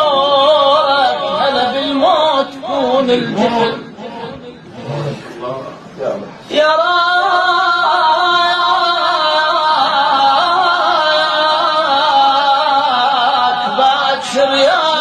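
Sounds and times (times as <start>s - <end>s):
person singing wordless melisma: 0.0s - 5.4s.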